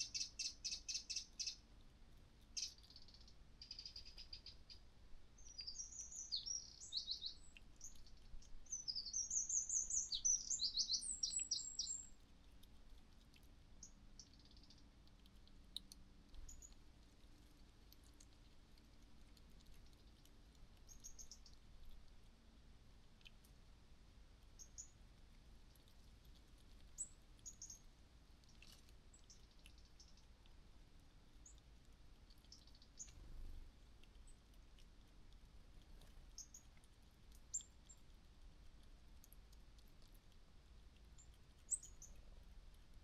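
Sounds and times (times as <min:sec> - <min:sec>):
small animals chirping and squeaking: 0:02.5 - 0:04.8, 0:05.4 - 0:14.9, 0:16.4 - 0:16.8, 0:19.6 - 0:21.6, 0:25.8 - 0:30.4, 0:32.3 - 0:34.5, 0:35.8 - 0:36.8, 0:41.2 - 0:42.4.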